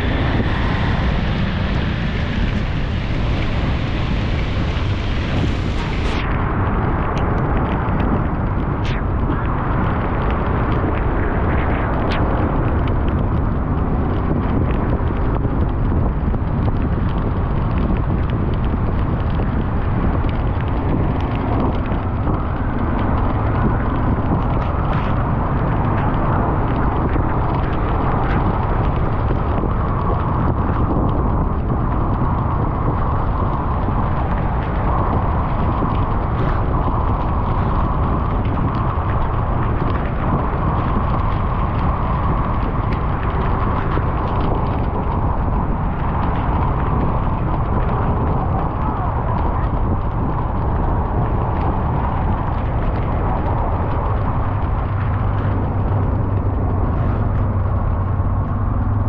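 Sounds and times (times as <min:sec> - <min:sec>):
car driving noise: 0:00.0 - 0:59.0.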